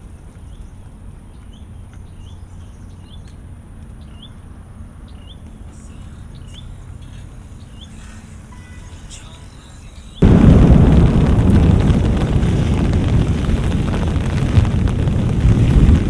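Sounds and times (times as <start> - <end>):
steady low rumble: 10.2 - 16.0.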